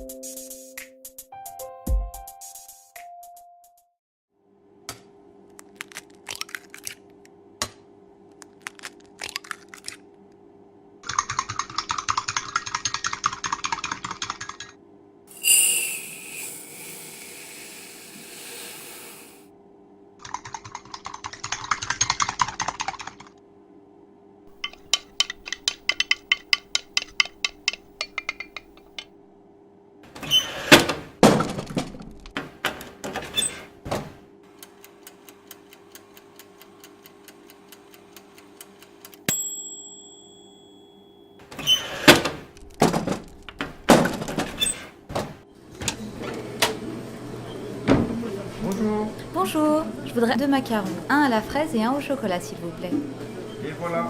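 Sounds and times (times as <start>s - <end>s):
sudden hiss: 15.3s - 19.4s.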